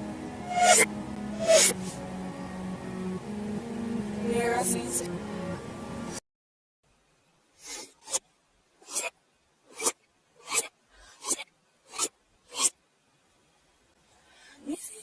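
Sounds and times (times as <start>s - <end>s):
stifled sneezes: 8.9s - 9.1s.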